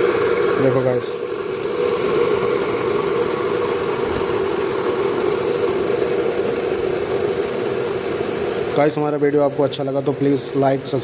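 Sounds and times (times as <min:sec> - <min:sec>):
electric kettle heating water: 0:00.0 - 0:11.0.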